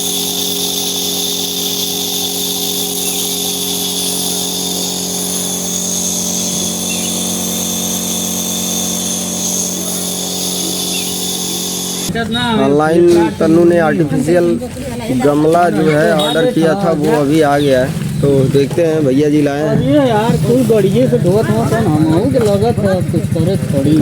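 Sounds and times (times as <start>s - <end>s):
steam inhaler motor hum: 0.0s - 12.1s.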